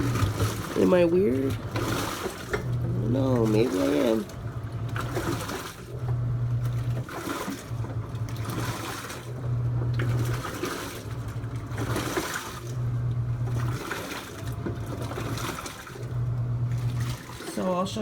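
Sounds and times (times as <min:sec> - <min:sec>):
washing machine motor humming: 0:00.0 - 0:18.0
water and clothes sloshing: 0:00.0 - 0:18.0.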